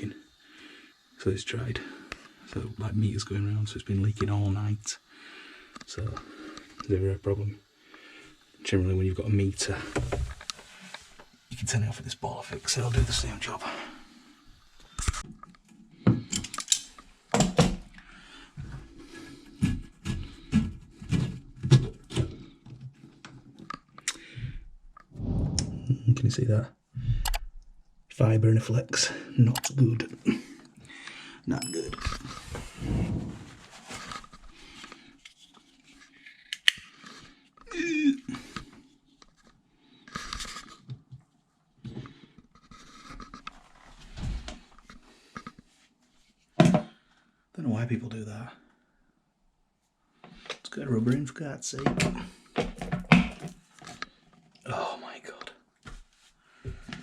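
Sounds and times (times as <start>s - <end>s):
scratching and rustling handling: 31.8s - 37.6s.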